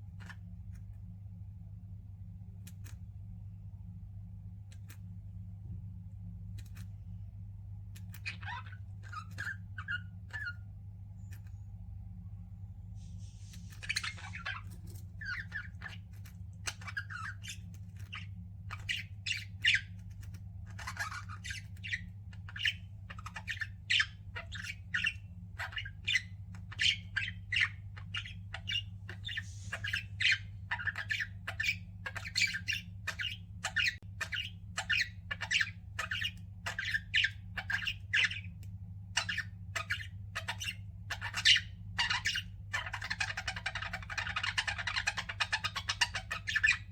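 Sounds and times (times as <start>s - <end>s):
steady low hum: 0.0s - 46.9s
budgerigars chattering and squawking: 8.0s - 10.7s, 13.2s - 46.9s.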